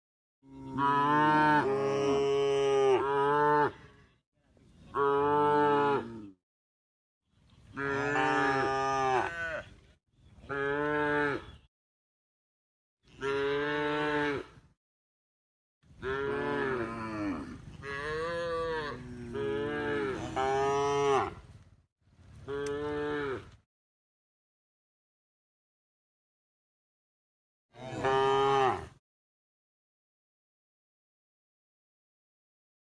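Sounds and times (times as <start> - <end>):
cow mooing: 0.4 - 3.8, 5.0 - 6.4, 7.8 - 9.6, 10.5 - 11.5, 13.2 - 14.6, 16.0 - 21.4, 22.5 - 23.5, 27.8 - 29.0.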